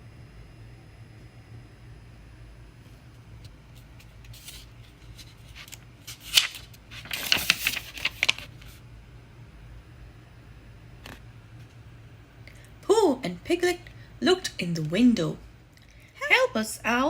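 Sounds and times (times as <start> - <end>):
paper page turning: 3.8 - 8.8.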